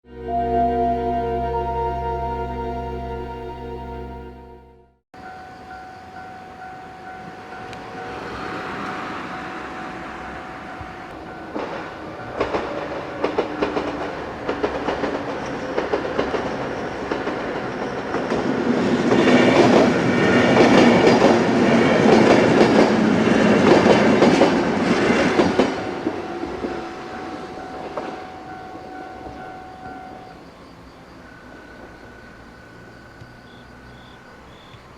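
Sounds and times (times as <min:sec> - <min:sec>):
level crossing warning bell: 0:00.1 - 0:14.1, 0:24.2 - 0:30.5.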